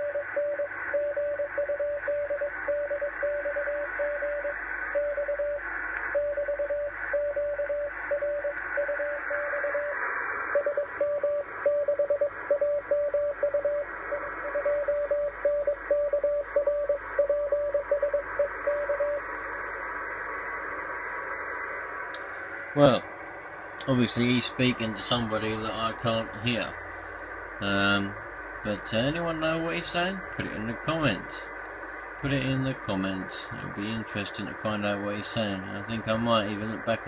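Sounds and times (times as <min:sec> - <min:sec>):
morse code tone keyed on and off: 0:00.0 - 0:09.9, 0:10.6 - 0:19.2
radio band hiss: 0:00.0 - 0:37.0.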